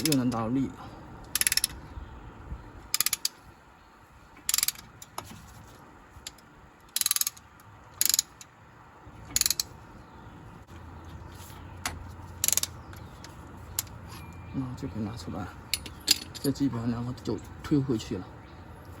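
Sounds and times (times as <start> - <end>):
ratchet tool clicking: 1.3 - 1.8, 2.9 - 3.4, 4.4 - 5.1, 6.2 - 8.5, 9.3 - 9.7, 12.4 - 12.8.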